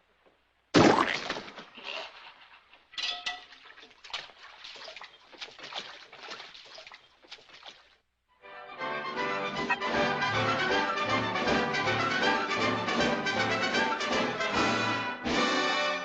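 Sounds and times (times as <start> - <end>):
cartoon hits and pops: 0.8 - 1.6
closing music: 8.4 - 16.0.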